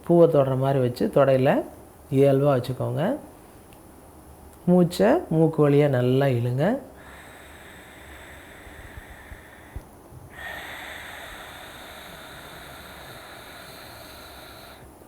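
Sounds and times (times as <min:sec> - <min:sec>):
breath drawn in through nose: 0:07.0 - 0:15.0
rushing breath through throat: 0:07.0 - 0:15.0.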